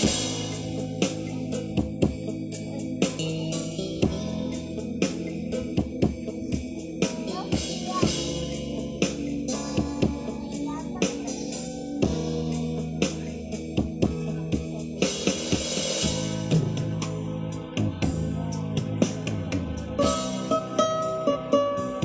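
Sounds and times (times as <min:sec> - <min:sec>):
sustained held chords: 0:00.0 - 0:15.1
cymbal washes: 0:00.0 - 0:19.4
steady drum beat: 0:00.0 - 0:22.0.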